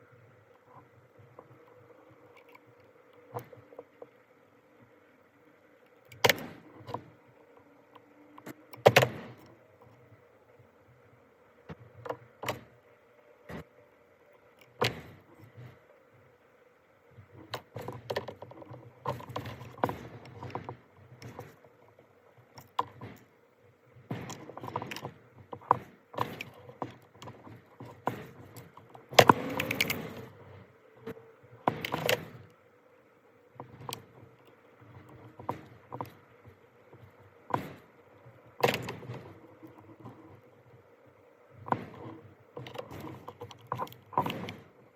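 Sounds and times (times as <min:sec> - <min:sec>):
faint steady hum: 0:00.0 - 0:44.9
tools clicking and knocking: 0:22.5 - 0:23.3, 0:24.1 - 0:30.4, 0:31.6 - 0:32.5, 0:38.6 - 0:40.4, 0:41.7 - 0:44.7.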